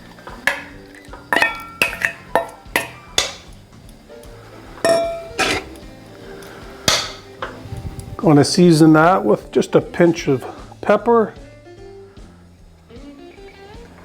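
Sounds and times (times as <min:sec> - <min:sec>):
plucked background music: 0:00.0 - 0:14.0.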